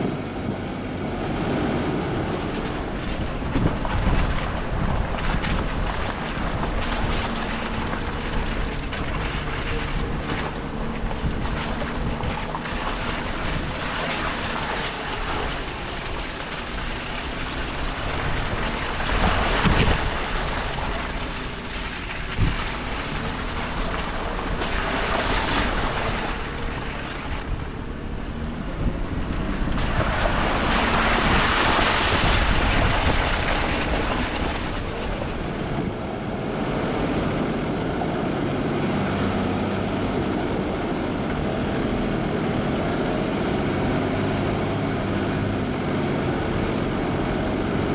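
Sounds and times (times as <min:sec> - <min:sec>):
rushing noise: 0:00.0 - 0:12.4, 0:30.0 - 0:47.9
vehicle engine running: 0:00.0 - 0:47.9.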